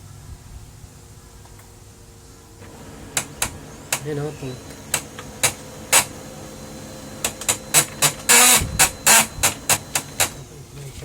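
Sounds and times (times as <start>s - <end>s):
faint steady whine: 2.5s - 11.0s
printer clicks and knocks: 2.6s - 10.4s
printer rasping burst: 2.6s - 10.9s.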